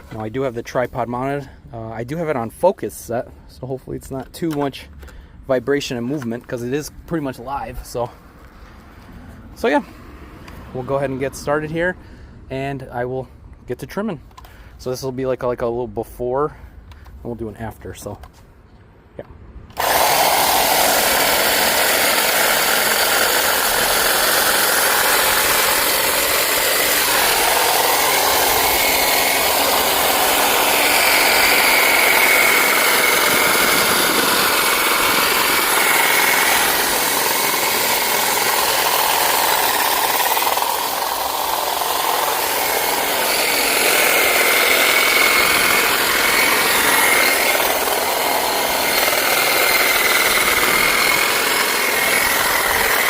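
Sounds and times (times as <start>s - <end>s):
electric hedge trimmer cutting: 19.7s - 53.0s.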